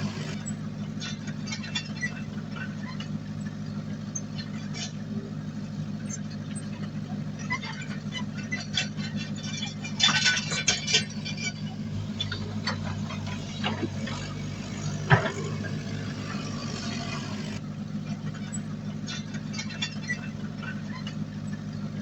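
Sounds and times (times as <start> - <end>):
diesel engine running: 0.0 - 22.0
metallic clanks and knocks: 8.5 - 17.6.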